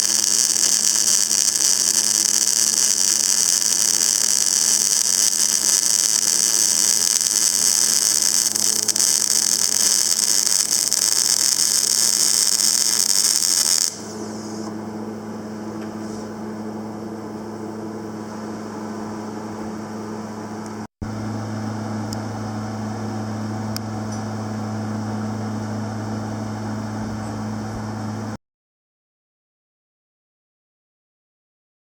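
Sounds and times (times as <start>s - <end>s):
welding arc hiss-crackle: 0.0s - 14.7s
welder electrical hum: 0.0s - 28.4s.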